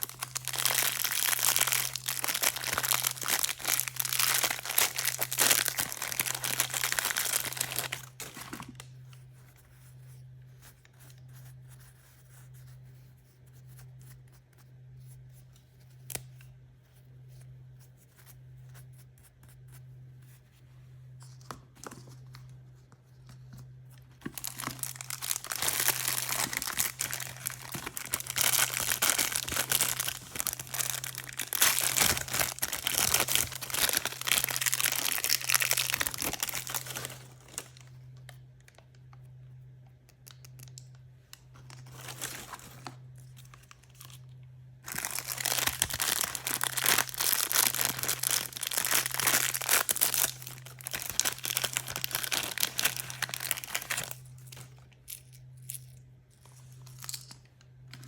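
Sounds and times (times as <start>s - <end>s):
packaging torn and crinkled: 0.0s - 8.9s, 24.2s - 38.3s, 41.6s - 55.2s
low steady hum: 0.0s - 58.0s.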